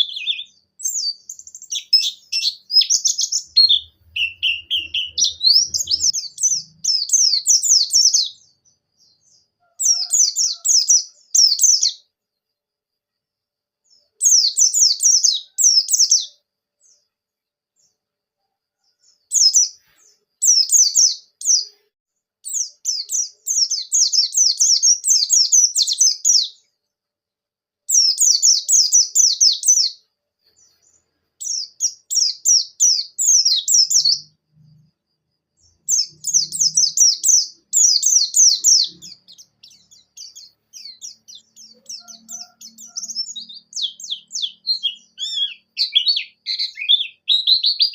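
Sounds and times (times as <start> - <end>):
bird twittering: 0.0 - 8.5, 35.8 - 47.9.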